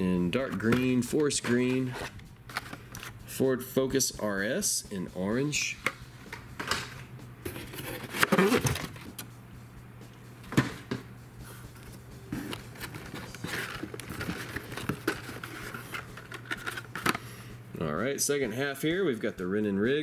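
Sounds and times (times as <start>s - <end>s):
plastic packaging crinkling: 12.5s - 17.2s.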